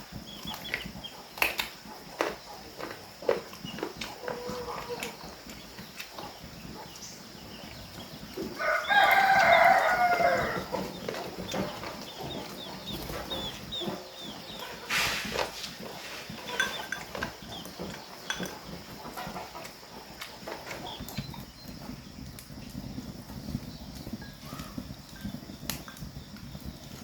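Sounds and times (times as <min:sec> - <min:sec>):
rooster crowing: 0:08.5 - 0:10.9
rustling: 0:14.6 - 0:17.4.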